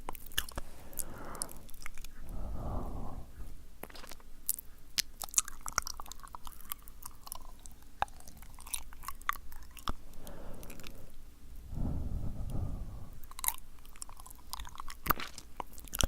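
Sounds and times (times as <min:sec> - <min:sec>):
tongue clicks and lip smacks: 0:00.0 - 0:00.7, 0:03.8 - 0:10.0, 0:13.2 - 0:16.0
soft breath: 0:00.4 - 0:04.1, 0:08.1 - 0:13.7.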